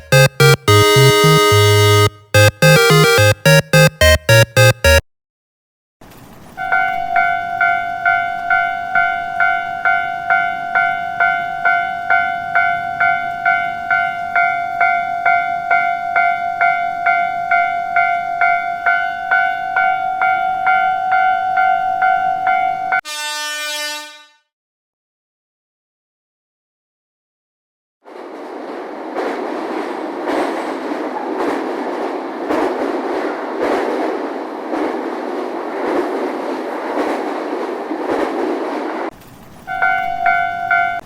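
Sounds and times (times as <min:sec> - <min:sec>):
train horn blast: 0:23.1 - 0:24.3.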